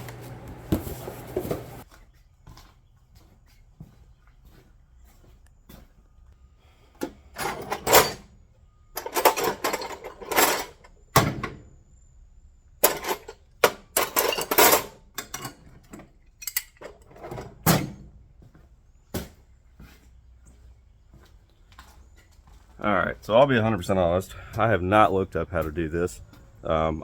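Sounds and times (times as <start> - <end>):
handling rustles and scrapes: 0.0 - 2.1.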